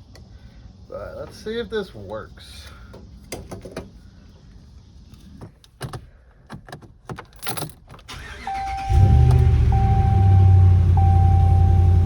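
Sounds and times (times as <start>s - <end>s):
keys jangling: 6.7s - 8.0s
truck engine idling: 8.2s - 12.0s
steady electronic beep: 8.5s - 12.0s.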